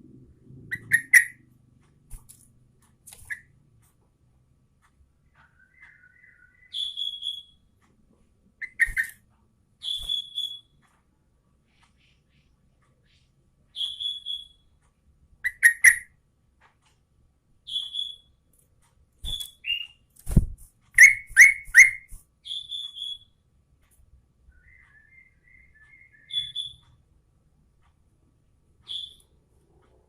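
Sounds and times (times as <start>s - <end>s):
bird whistling and chirping: 0.7s - 1.4s, 5.4s - 7.6s, 9.8s - 10.7s, 13.8s - 14.6s, 15.4s - 16.1s, 17.7s - 18.3s, 19.3s - 20.0s, 21.0s - 23.3s, 24.5s - 26.8s, 28.9s - 29.2s.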